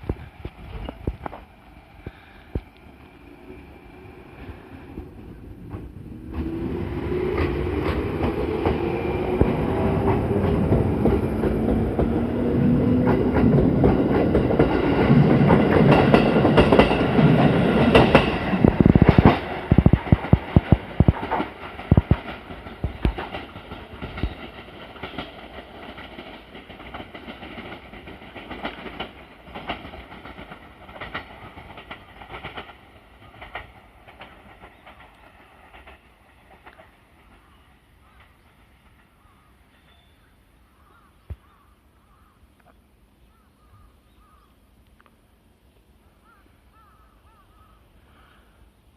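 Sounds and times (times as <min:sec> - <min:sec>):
wheels clattering over rail joints: 0:05.0 - 0:39.0.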